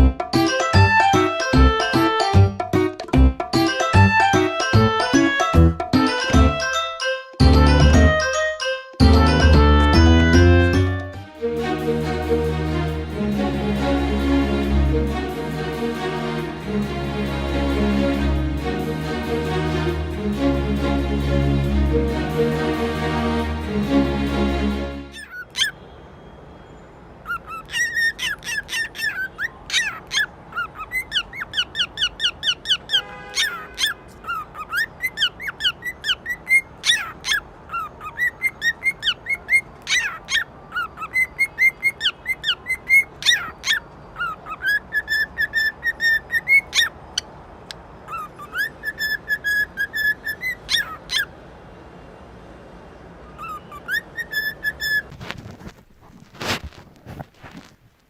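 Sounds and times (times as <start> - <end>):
animal squeaks and chirps: 25.1 - 25.8, 27.2 - 47.3, 48.0 - 51.3, 53.2 - 55.1.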